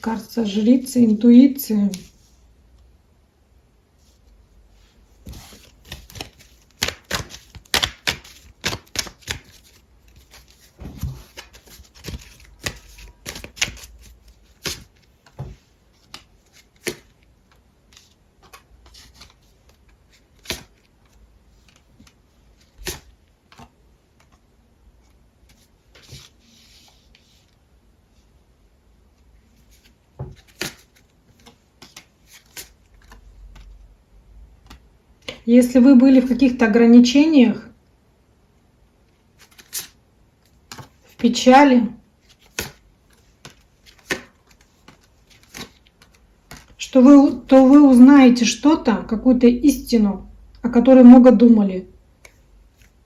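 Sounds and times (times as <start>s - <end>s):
cards shuffling and snapping: 5.2s - 24.4s, 29.7s - 33.8s, 39.4s - 41.2s, 42.2s - 46.8s.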